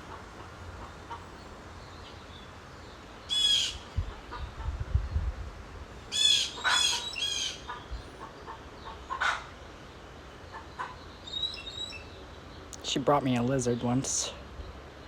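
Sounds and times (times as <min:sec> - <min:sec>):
bird squawking harshly: 0:06.1 - 0:07.6.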